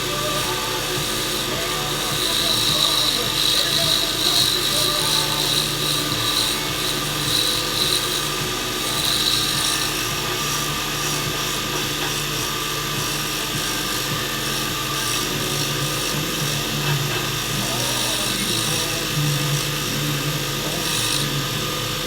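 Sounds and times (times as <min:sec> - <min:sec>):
turning tool scraping wood: 0:00.0 - 0:22.0
wood lathe motor hum: 0:00.0 - 0:22.0.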